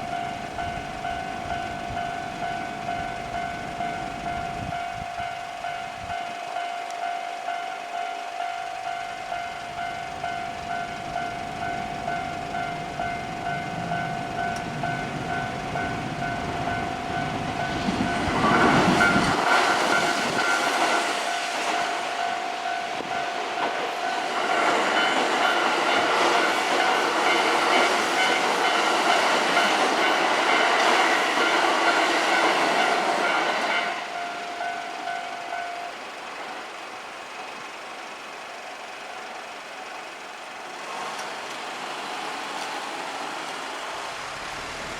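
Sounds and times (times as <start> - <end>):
level crossing bell ringing: 0.0 - 18.4, 19.0 - 30.2, 31.4 - 36.0
train wheels clattering: 8.0 - 36.8.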